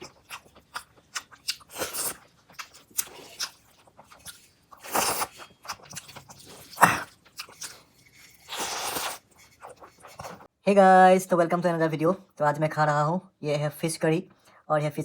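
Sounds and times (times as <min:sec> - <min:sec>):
crunchy chewing: 0:00.0 - 0:10.5.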